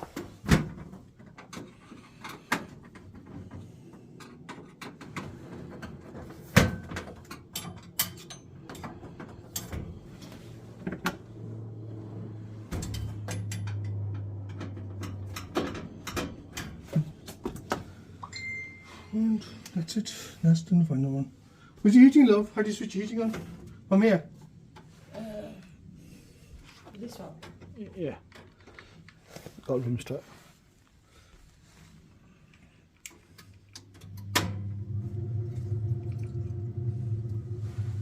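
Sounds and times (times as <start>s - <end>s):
knocks and clicks of boiler panels: 0.0s - 10.0s
low steady hum: 1.4s - 29.1s, 30.8s - 38.0s.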